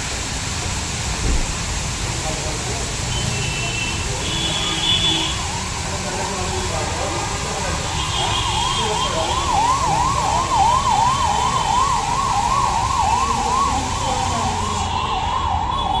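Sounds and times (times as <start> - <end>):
warbling electronic siren: 8.0 - 16.0.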